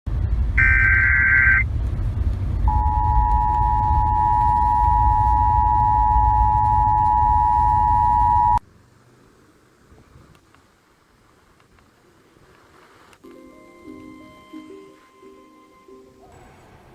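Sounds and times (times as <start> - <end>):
low radio hum: 0.1 - 13.4
two-tone attention signal: 0.6 - 1.6, 2.7 - 8.6
warbling digital data tones: 0.6 - 1.6, 2.7 - 8.6.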